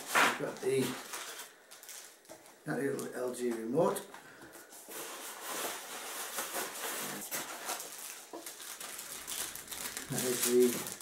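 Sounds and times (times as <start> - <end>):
packaging rustling and crinkling: 0.0 - 11.0.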